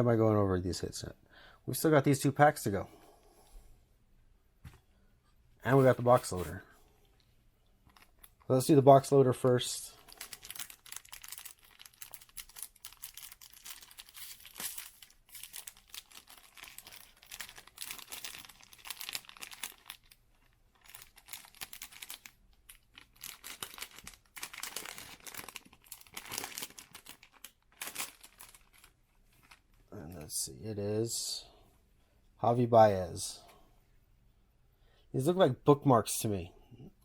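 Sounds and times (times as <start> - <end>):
wrapper crinkling and tearing: 9.5 - 29.8.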